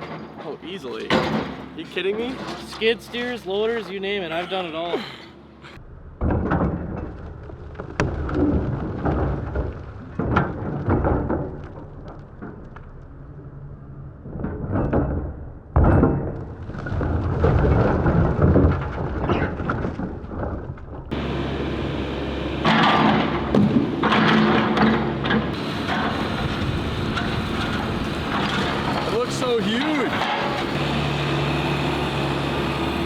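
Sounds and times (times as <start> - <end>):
demolition machinery rumbling: 0.0 - 33.0
debris crashing and crunching: 6.0 - 13.4, 14.2 - 21.4, 22.6 - 32.5.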